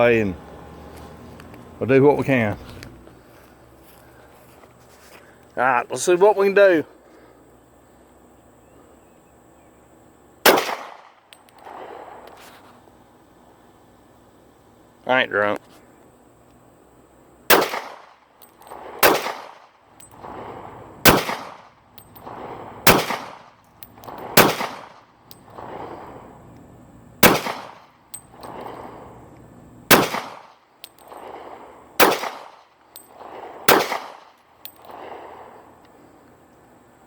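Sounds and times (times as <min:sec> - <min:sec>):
pistol shots with echo: 0:10.4 - 0:12.2, 0:17.5 - 0:25.9, 0:27.2 - 0:28.6, 0:29.9 - 0:35.2.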